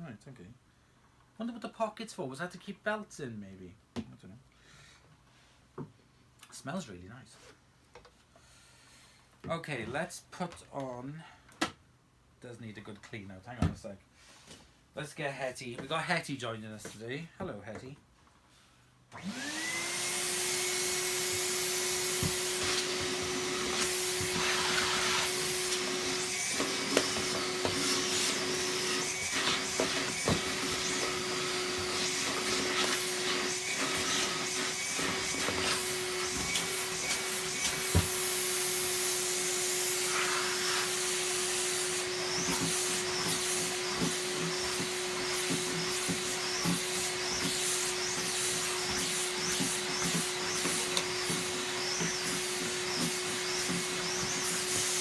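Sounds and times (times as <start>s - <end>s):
vacuum cleaner motor whining: 19.2s - 55.0s
vacuum tool knocks: 22.2s - 23.4s, 37.9s - 38.2s.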